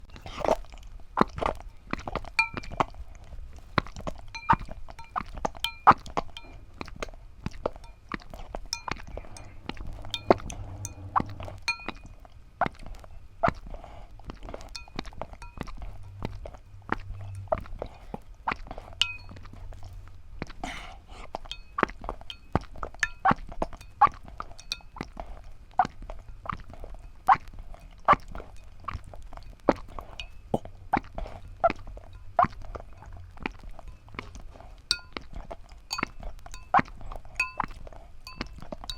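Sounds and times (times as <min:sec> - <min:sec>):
eggshells cracking and clinking: 0:00.0 - 0:13.6, 0:14.4 - 0:20.0, 0:21.4 - 0:38.9
low hum: 0:06.3 - 0:13.4, 0:14.8 - 0:20.4.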